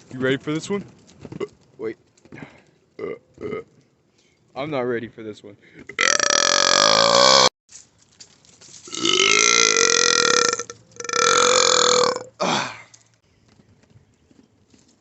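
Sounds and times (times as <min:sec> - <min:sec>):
man burping loudly: 0:03.0 - 0:03.8, 0:05.9 - 0:07.5, 0:08.9 - 0:12.9.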